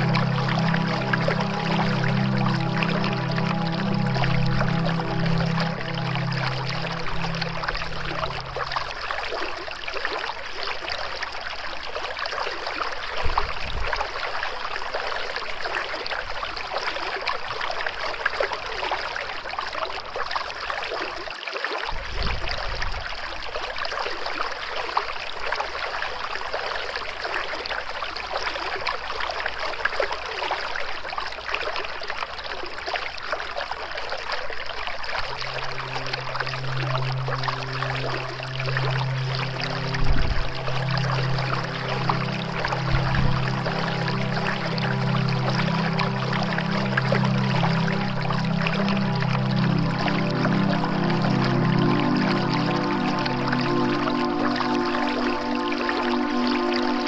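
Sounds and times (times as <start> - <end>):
soft low music tone: 0.0 - 11.3, 34.6 - 57.0
flowing water: 0.0 - 57.0.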